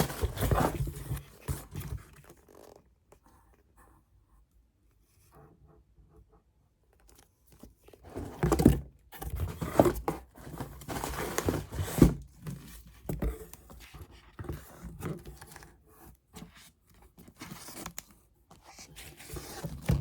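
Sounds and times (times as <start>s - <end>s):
cardboard box scraping: 0.0s - 2.5s, 8.0s - 15.6s, 18.7s - 20.0s.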